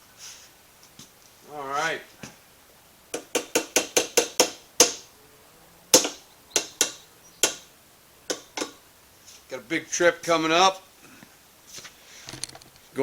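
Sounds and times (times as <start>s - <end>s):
hammer striking metal: 3.2s - 5.1s, 5.9s - 7.7s.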